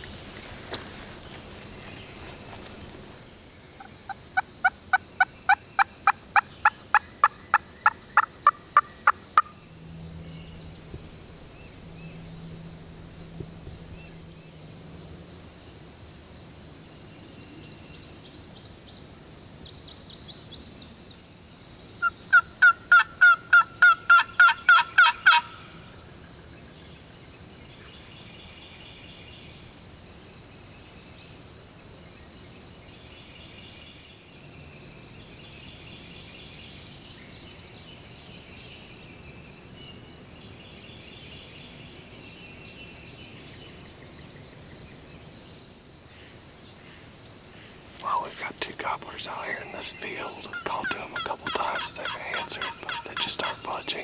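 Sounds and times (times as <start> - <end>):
faint high-pitched hum: 1.6 - 22.3, 34.3 - 54.0
wild turkey yelps: 22.0 - 25.7, 50.5 - 53.6.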